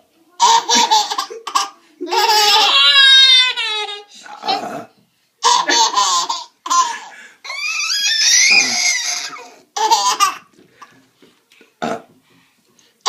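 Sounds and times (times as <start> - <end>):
baby laughing: 0.4 - 4.1, 5.4 - 10.5.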